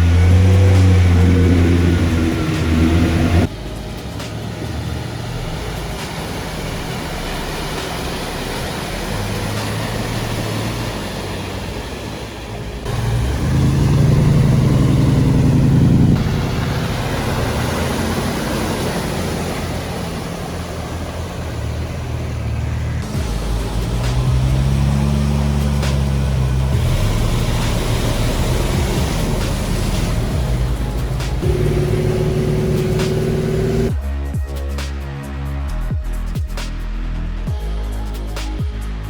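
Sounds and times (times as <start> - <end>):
off-road vehicle engine running: 0.0 - 36.7.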